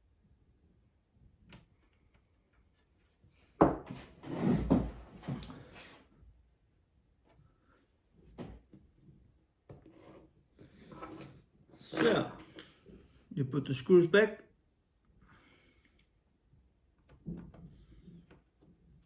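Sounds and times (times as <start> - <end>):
knocking and scraping: 3.6 - 5.7.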